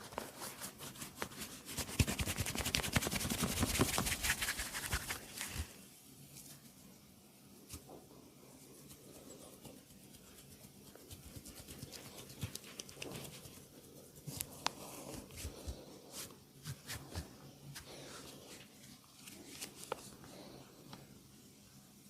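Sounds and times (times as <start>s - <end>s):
hands rubbing over skin: 0.0s - 5.7s, 8.7s - 20.1s.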